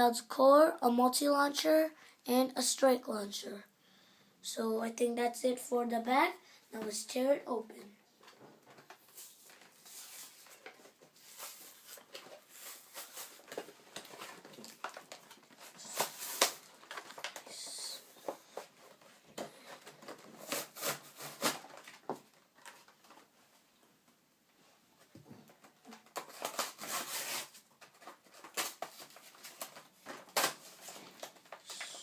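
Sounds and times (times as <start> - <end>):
packaging being torn open: 25.9 - 32.0
sharp plastic cracks: 27.8 - 32.0.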